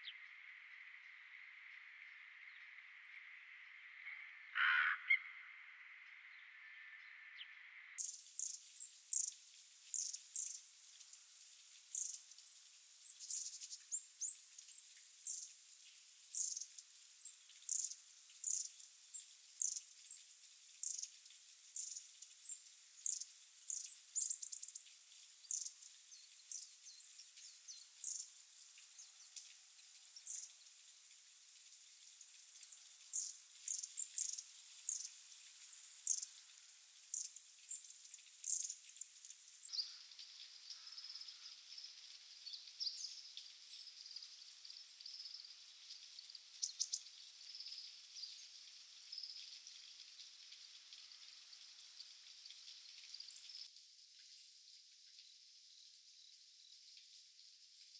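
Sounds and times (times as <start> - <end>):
birds giving high thin calls: 4.0 - 5.5, 8.0 - 10.7, 11.9 - 15.6, 16.3 - 21.2, 21.8 - 30.6, 32.6 - 41.9.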